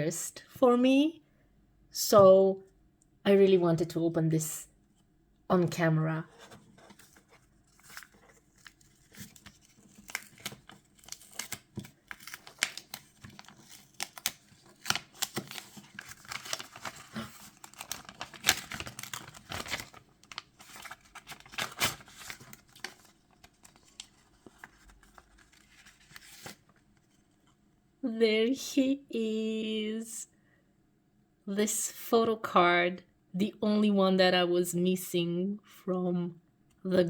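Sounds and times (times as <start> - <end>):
parcel packaging tearing: 6.9 - 26.7.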